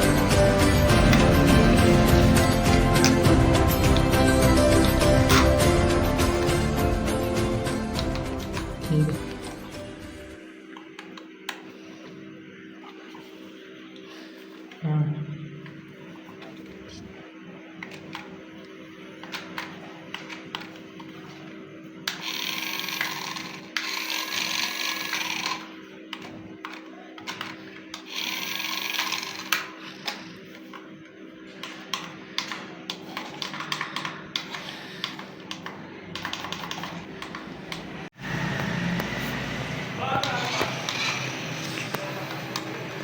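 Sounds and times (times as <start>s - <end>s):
small electric motor whirring: 22.0s - 25.8s, 28.0s - 30.6s.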